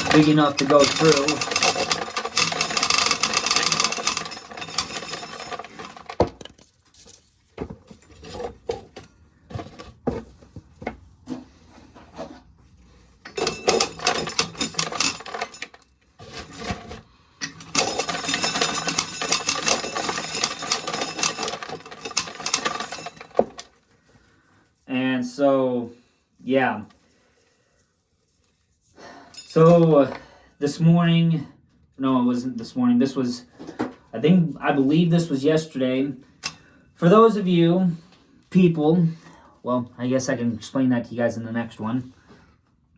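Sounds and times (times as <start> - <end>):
corn sheller rattling clatter: 0.0 - 6.6, 13.3 - 23.7
scattered knocks and clicks: 0.0 - 6.6, 13.3 - 15.8, 16.4 - 23.7.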